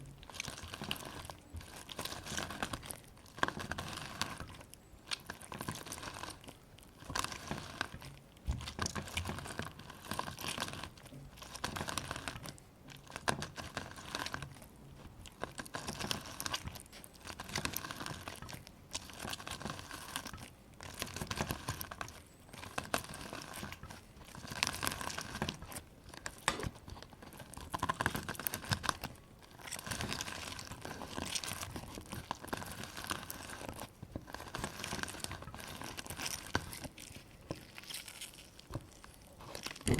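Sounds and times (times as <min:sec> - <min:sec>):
lemon crackling when squeezed: 0:15.3 - 0:39.9.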